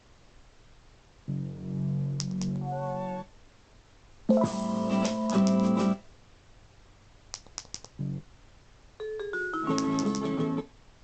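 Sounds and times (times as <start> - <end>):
music snippets from a speaker: 4.3 - 6.0
push button clicks: 9.7 - 10.3.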